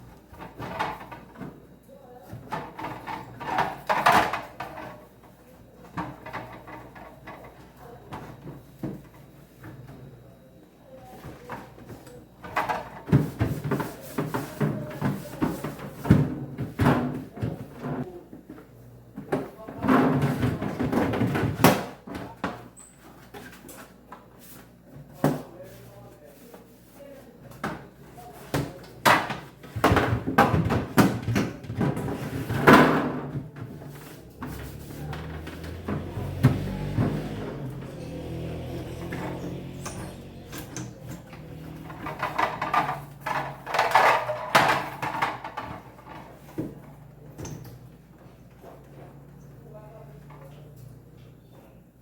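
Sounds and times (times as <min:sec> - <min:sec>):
knocks and bumps of household things: 0:00.3 - 0:09.8, 0:11.2 - 0:22.7, 0:27.5 - 0:47.4
household knocks and clatter: 0:28.5 - 0:46.8.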